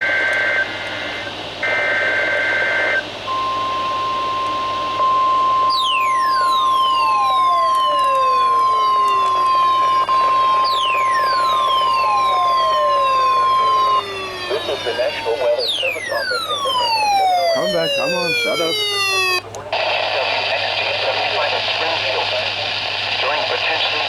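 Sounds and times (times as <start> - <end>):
steady warning alarm tone: 0.0 - 19.5
falling siren-like sweep: 5.3 - 19.4.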